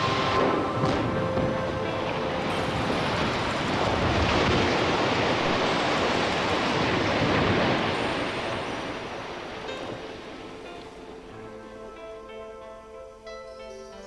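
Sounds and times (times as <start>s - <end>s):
building collapsing roar: 0.0s - 10.4s.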